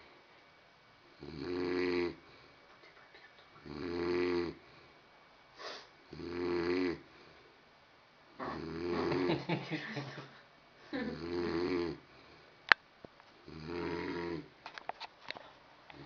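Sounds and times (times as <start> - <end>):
man snoring: 1.2 - 2.2, 3.6 - 4.6, 6.1 - 7.1, 8.4 - 9.3, 11.0 - 12.1, 13.4 - 14.5.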